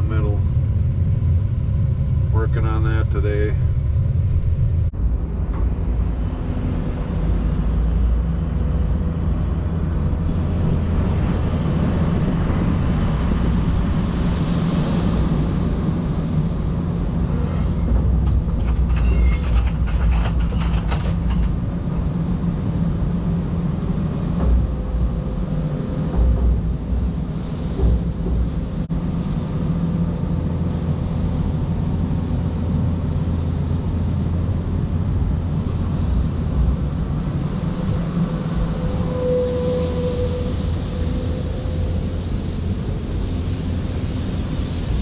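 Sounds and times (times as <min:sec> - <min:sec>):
excavator diesel engine running: 0:14.8 - 0:44.9
light rattles: 0:17.9 - 0:22.2
rushing hiss: 0:35.3 - 0:45.0.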